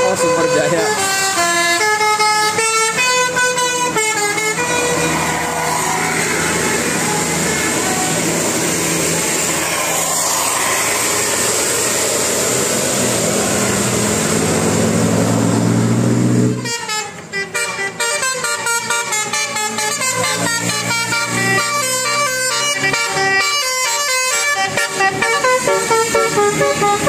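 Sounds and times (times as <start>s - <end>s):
musical bus horn: 0.0s - 10.4s, 16.3s - 27.0s
bus engine: 0.0s - 27.0s
road noise: 0.0s - 27.0s.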